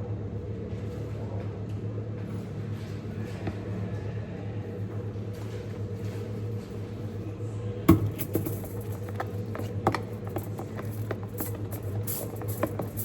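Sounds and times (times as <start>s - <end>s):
steady low hum: 0.0s - 13.0s
plastic items clicking and knocking: 7.9s - 13.0s.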